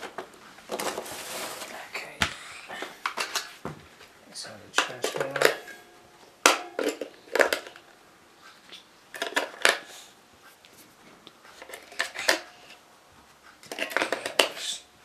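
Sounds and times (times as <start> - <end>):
plastic packaging clicks and crackles: 4.7 - 5.6.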